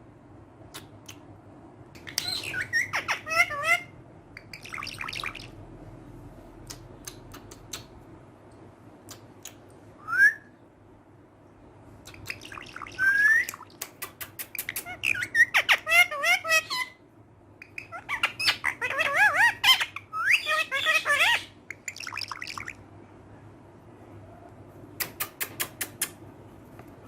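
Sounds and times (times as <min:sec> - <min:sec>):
parrot squawking and chirping: 0:02.0 - 0:05.6, 0:12.1 - 0:17.0, 0:17.6 - 0:22.8
sharp clicks: 0:25.0 - 0:26.2.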